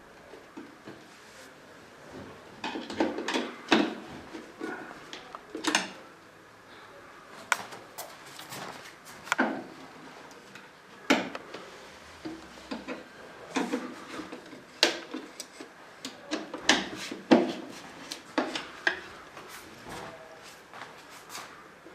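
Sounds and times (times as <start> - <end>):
furniture parts knocking and clunking: 2.1 - 4.9, 16.4 - 21.0.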